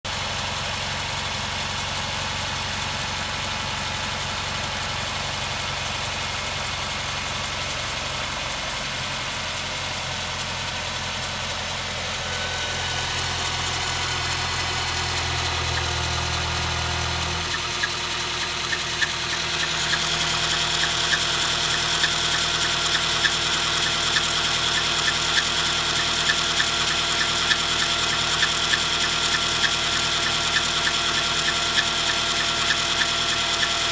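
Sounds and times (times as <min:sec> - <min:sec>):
car engine idling: 0:00.1 - 0:33.9
repeating sharp engine knock: 0:12.2 - 0:33.9.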